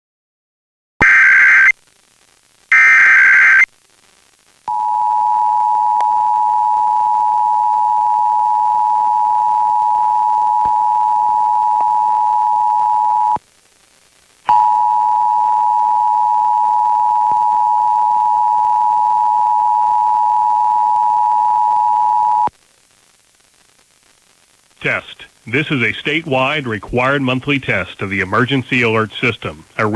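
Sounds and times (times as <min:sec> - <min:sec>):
warbling data tones: 0:02.7 - 0:03.7.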